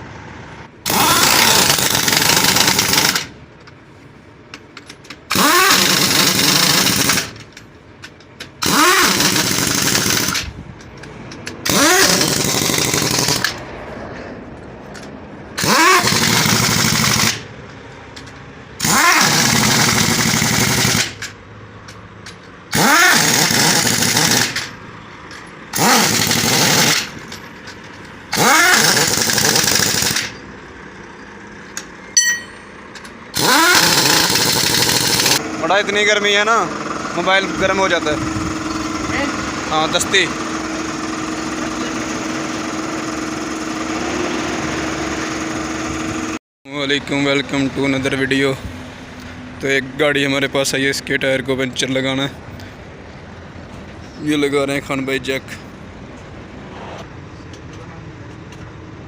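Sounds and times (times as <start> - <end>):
pneumatic impact wrench: 0.8 - 3.4, 4.5 - 13.6, 15.6 - 17.6, 18.2 - 30.5, 31.8 - 35.5, 38.2 - 46.4.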